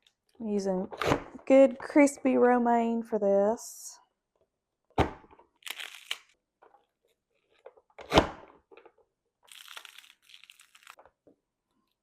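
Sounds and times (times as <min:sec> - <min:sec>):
lettuce crunching and tearing: 0:05.6 - 0:06.3, 0:09.4 - 0:11.0.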